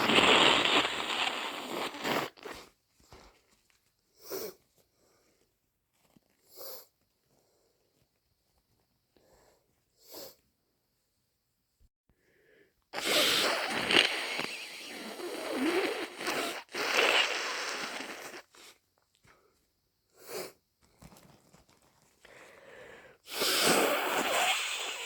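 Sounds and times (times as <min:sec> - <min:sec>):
person blowing nose: 0:00.0 - 0:02.7, 0:13.0 - 0:18.8, 0:23.2 - 0:25.0
person sniffing: 0:00.0 - 0:02.7, 0:04.2 - 0:04.6, 0:10.0 - 0:10.4, 0:13.0 - 0:18.8, 0:20.2 - 0:20.6, 0:22.3 - 0:25.0.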